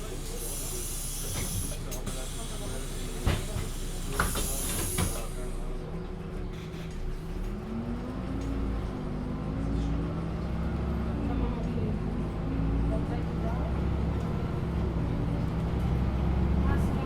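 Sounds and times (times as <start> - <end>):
bus clunks: 0.0 - 5.6
diesel bus engine pulling away: 0.0 - 17.0
compressed air hissing: 0.1 - 5.4.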